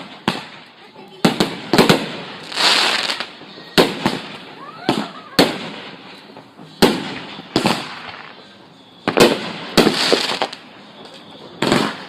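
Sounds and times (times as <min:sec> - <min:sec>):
fireworks sharp bangs: 0:00.0 - 0:12.0.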